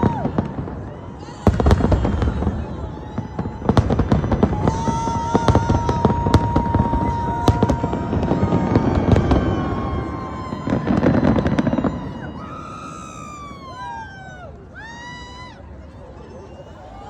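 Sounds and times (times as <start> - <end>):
fireworks bangs and crackling: 0.0 - 13.6.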